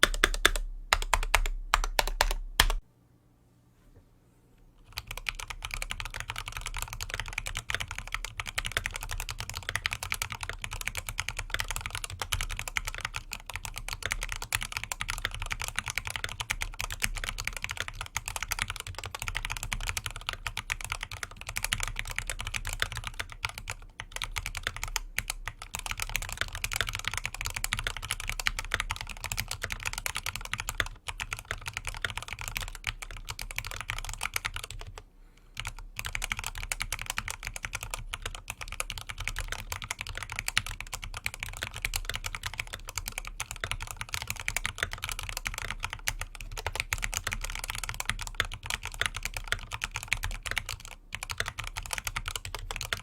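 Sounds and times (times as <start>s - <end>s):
fast typing on mechanical keyboard: 0.0s - 2.8s, 4.8s - 35.0s, 35.6s - 53.0s.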